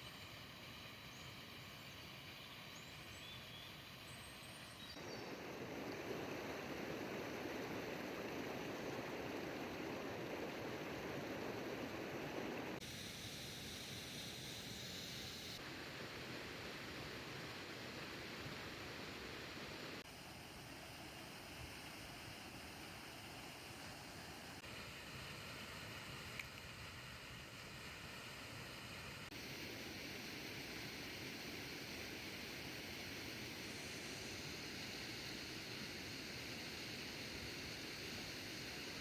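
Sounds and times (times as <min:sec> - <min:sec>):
faint chirps: 0:00.0 - 0:15.6
running water rushing: 0:00.0 - 0:39.0.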